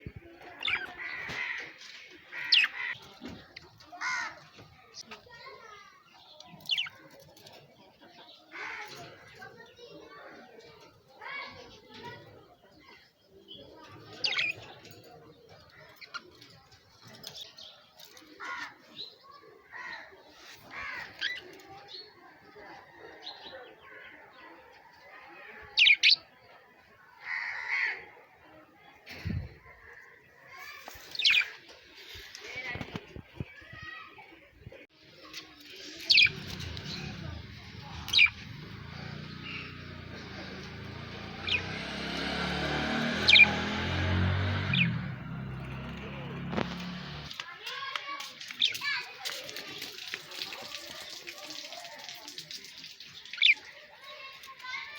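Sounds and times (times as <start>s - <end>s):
birds chirping: 0.0s - 54.9s
bird chirping: 35.2s - 47.4s.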